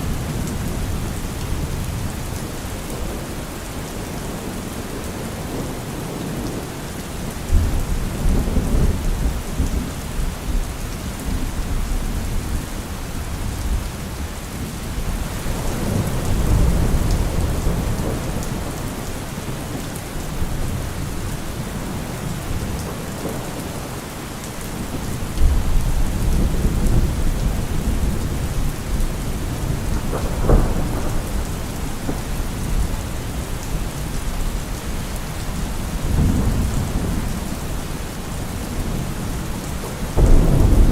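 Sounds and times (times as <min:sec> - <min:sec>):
steady rain falling: 0:00.0 - 0:40.9
low rolling thunder: 0:07.5 - 0:10.7, 0:15.0 - 0:23.7, 0:24.8 - 0:40.9
sharp thunder crack: 0:40.2 - 0:40.9.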